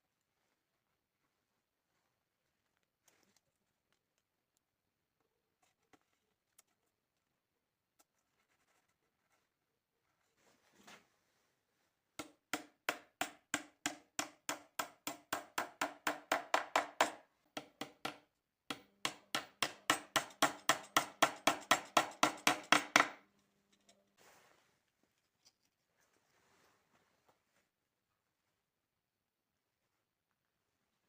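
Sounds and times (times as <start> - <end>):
hammer striking wood: 12.2 - 23.2.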